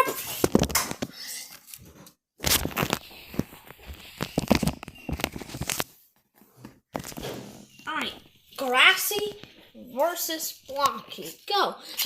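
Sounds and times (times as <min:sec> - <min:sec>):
crinkly rustling: 0:01.7 - 0:06.1.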